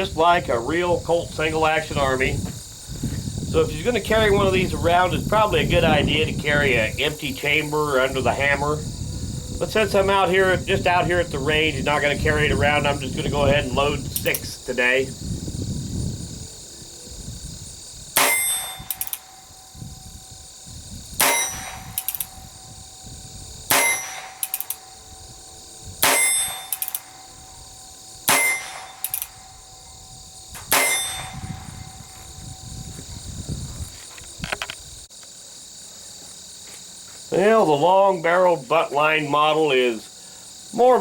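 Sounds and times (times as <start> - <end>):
metallic ring: 18.2 - 19.8, 21.2 - 22.8, 23.7 - 25.2, 26.0 - 32.5.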